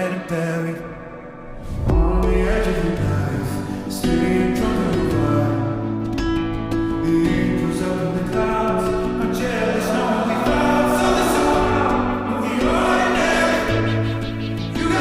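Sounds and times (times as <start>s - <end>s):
pop song with vocals: 0.0s - 15.0s.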